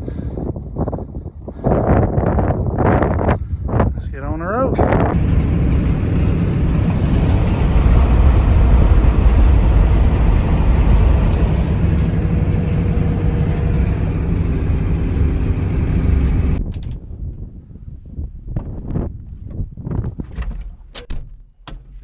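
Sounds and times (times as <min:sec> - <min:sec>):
road rumble: 0:05.1 - 0:16.6
truck engine drone: 0:05.2 - 0:16.6.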